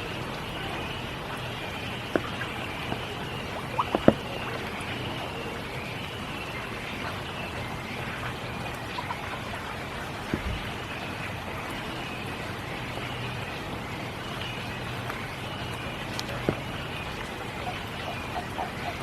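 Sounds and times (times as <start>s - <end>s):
single raindrops striking close: 0.0s - 19.0s
steady rain falling: 0.0s - 19.0s.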